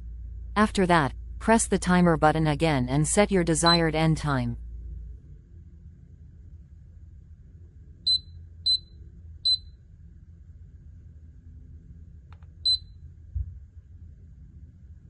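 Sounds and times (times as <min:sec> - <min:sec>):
short high beeps: 0:08.1 - 0:08.9, 0:09.5 - 0:09.7, 0:12.7 - 0:12.9.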